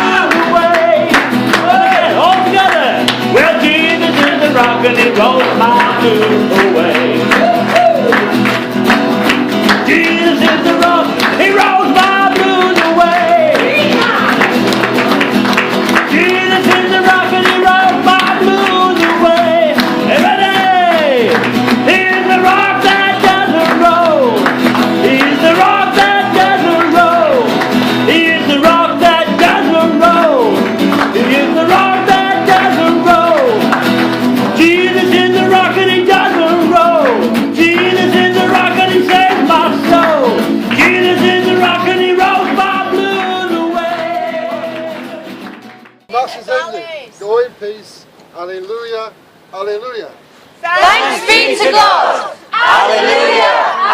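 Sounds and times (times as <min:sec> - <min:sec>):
group singing worship chorus: 0:00.0 - 0:02.2, 0:16.0 - 0:33.8, 0:34.6 - 0:45.4, 0:50.6 - 0:53.9
guitar: 0:00.0 - 0:46.9.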